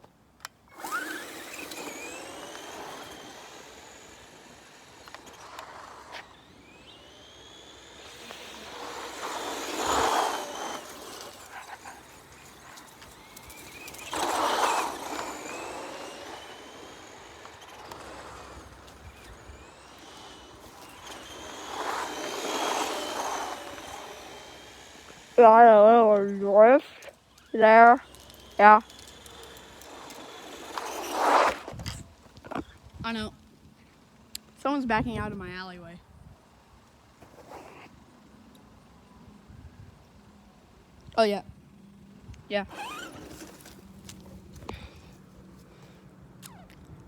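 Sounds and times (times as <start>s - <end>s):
rc car electric motor whining: 0.7s - 33.3s, 42.3s - 46.8s
tyre noise: 7.4s - 32.8s, 42.7s - 45.6s.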